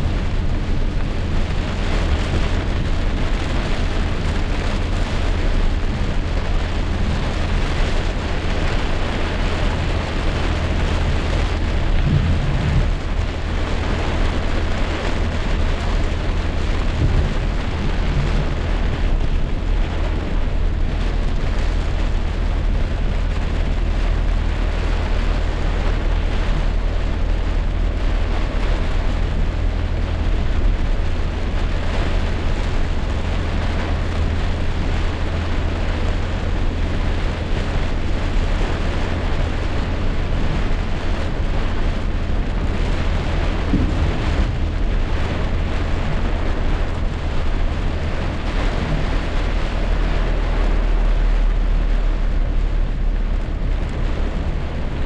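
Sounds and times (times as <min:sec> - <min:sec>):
deep rumble: 0:00.0 - 0:55.0
heavy rain pouring: 0:00.0 - 0:55.0.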